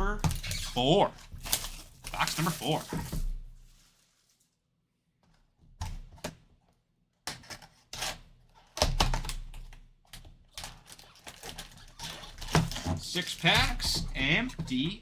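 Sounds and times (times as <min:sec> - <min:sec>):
foil packs rustling: 0:00.4 - 0:04.5, 0:10.6 - 0:15.0.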